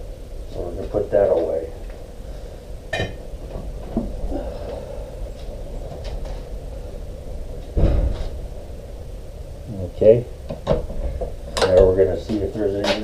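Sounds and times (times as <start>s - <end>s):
steady low rumble: 0.0s - 13.0s
heavy thud: 7.7s - 8.5s.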